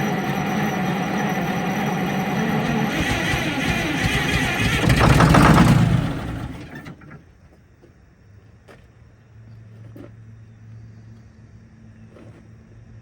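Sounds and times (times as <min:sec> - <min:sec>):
bus engine running loudly: 0:00.0 - 0:07.0.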